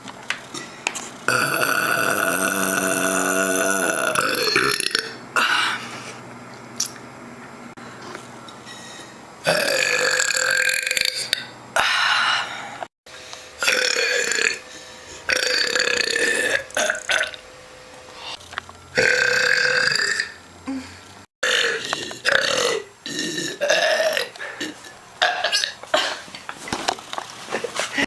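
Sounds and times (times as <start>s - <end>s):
woman belching: 1.3s - 5.6s, 9.5s - 11.5s, 13.6s - 14.6s, 15.3s - 17.4s, 19.0s - 20.4s, 21.4s - 25.8s.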